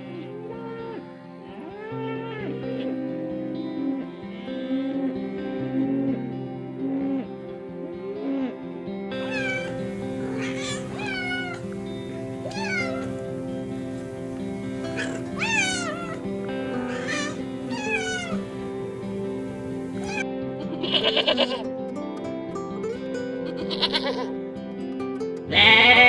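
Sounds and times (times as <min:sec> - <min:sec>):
cat meowing: 0:09.2 - 0:20.2.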